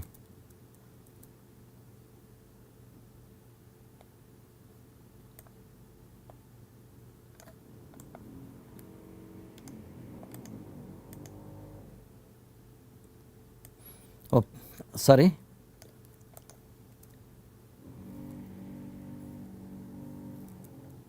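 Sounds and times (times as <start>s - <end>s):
low steady hum: 0.0s - 21.0s
mouse and keyboard clicks: 7.4s - 8.2s, 15.8s - 17.2s
drone of held tones: 7.7s - 12.1s, 17.8s - 21.0s.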